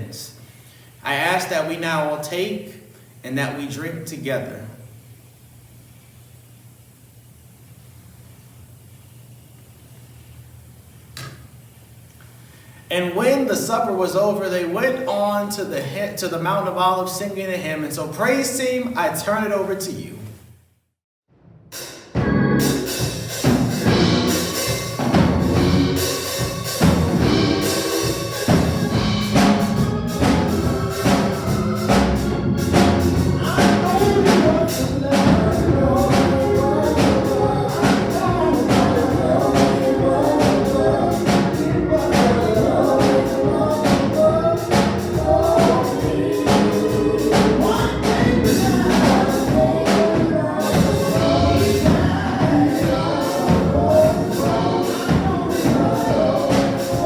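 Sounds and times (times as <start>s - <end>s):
gospel band playing: 0.0s - 4.7s, 21.8s - 57.0s
singers' voices: 24.3s - 57.0s.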